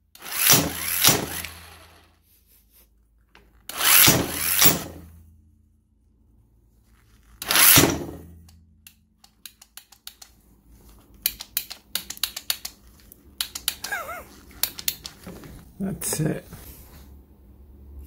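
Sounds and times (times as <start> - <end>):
impact wrench burst: 0.2 - 2.1, 3.7 - 5.1, 7.4 - 8.3
irregular clicks and rattles: 8.4 - 15.7.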